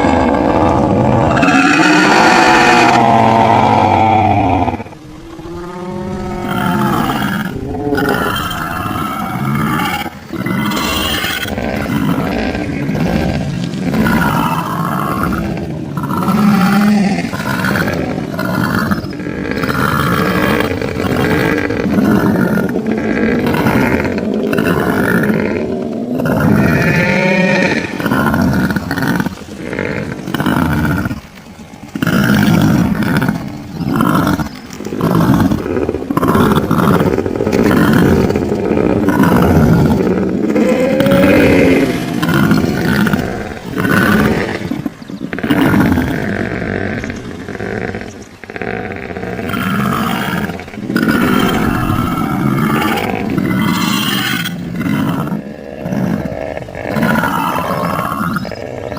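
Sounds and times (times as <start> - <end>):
creature calls rising and falling: 0.0 - 11.6, 40.4 - 44.7.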